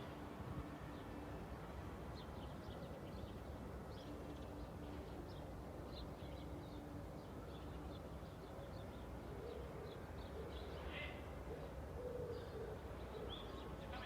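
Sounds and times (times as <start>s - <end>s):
dove cooing: 11.7s - 13.3s.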